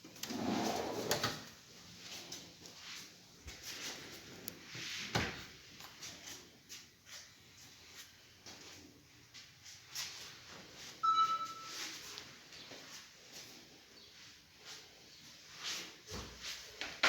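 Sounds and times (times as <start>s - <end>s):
drawer sliding: 0.2s - 1.5s.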